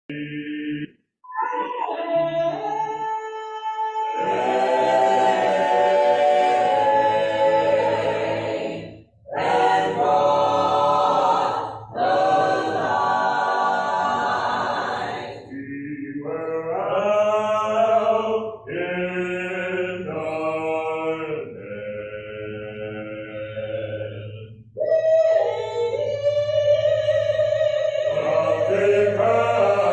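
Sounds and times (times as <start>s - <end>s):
choir singing a cappella: 0.1s - 0.9s, 4.2s - 29.9s.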